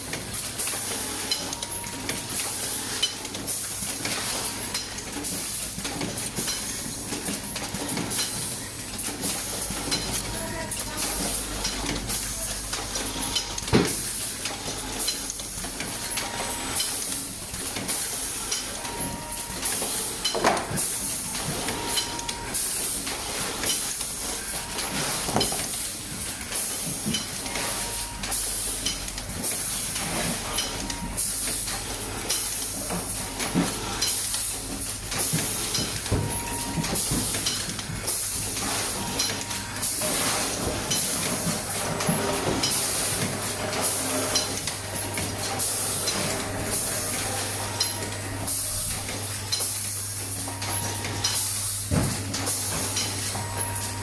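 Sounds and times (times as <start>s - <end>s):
short machine tones: 18.5s - 19.7s.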